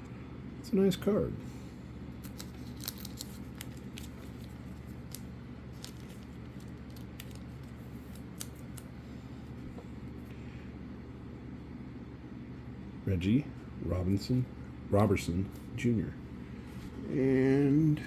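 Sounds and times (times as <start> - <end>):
low room hum: 0.0 - 18.0
cards clicking and rustling: 2.2 - 8.9.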